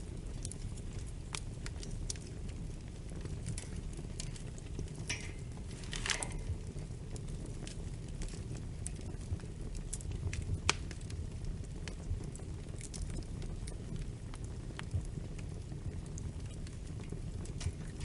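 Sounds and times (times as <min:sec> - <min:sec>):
low rumble of flames: 0:00.0 - 0:18.0
wood fire crackling: 0:00.0 - 0:18.0
fire hissing: 0:00.2 - 0:13.8.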